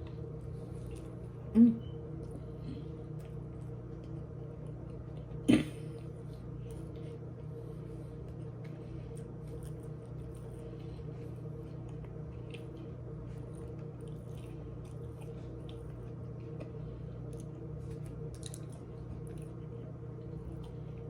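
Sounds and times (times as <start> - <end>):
steady low hum: 0.0 - 21.0
person eating: 4.9 - 21.0
mouth or throat noises: 5.5 - 5.8.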